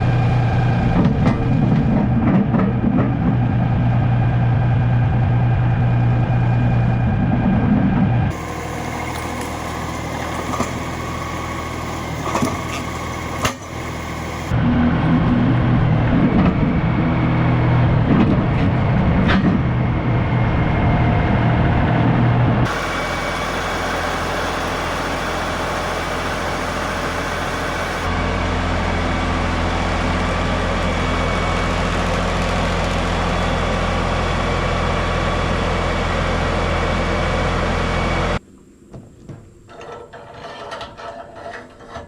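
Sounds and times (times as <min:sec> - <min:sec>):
hissy machinery: 0:08.3 - 0:14.5, 0:22.7 - 0:28.2
engine idling: 0:08.3 - 0:14.6, 0:22.6 - 0:38.4.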